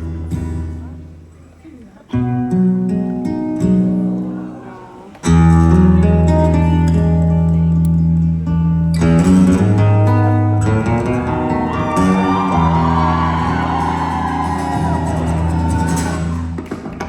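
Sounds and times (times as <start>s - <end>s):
guitar chords: 0.0s - 1.4s, 2.1s - 17.0s
bass notes: 5.2s - 16.7s
rock band playing: 9.0s - 17.0s.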